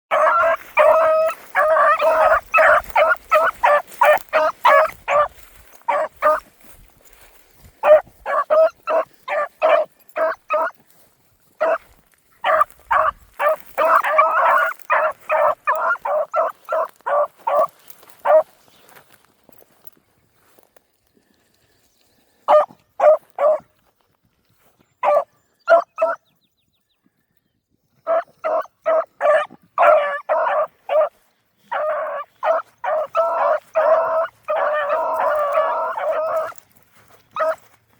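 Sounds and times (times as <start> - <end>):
young dogs barking: 0.1 - 10.9, 11.5 - 18.6, 22.5 - 23.7, 25.0 - 26.2, 28.0 - 37.8.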